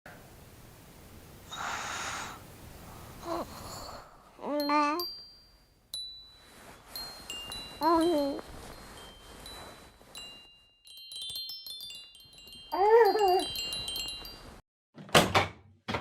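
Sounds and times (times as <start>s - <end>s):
burst of hiss: 1.5s - 3.2s
high chime tones: 4.6s - 14.6s.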